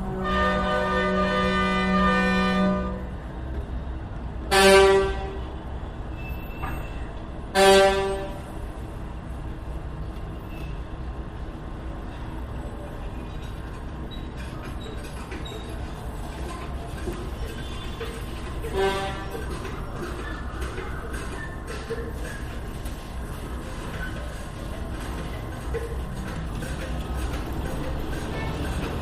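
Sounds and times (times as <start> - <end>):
low traffic rumble: 0.0 - 29.0
vehicle horn honking: 0.1 - 3.0, 4.5 - 5.5, 7.6 - 8.4, 18.7 - 19.3.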